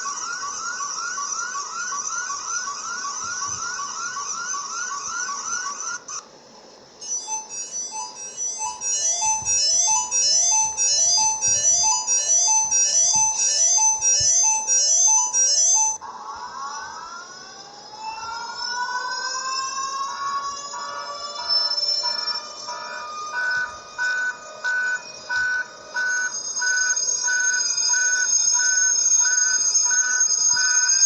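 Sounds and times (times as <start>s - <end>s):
rising siren-like sweeps: 0.0s - 6.2s, 7.0s - 31.0s
synthesized descending alert tones: 7.0s - 31.0s.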